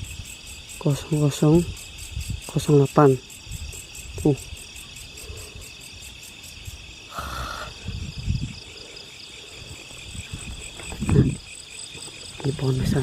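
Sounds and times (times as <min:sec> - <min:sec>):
insects trilling: 0:00.0 - 0:13.0
low thumps: 0:10.1 - 0:11.5.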